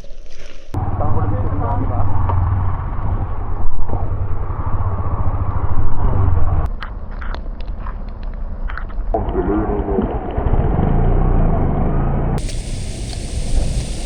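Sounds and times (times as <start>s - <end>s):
road and wind noise: 0.7s - 14.0s
motorcycle engine running: 0.8s - 6.7s, 9.2s - 14.0s.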